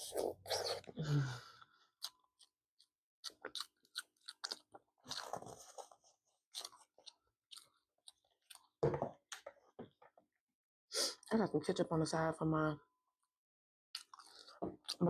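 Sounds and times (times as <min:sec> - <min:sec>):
mouth chewing food: 0:02.0 - 0:08.8, 0:13.9 - 0:15.0.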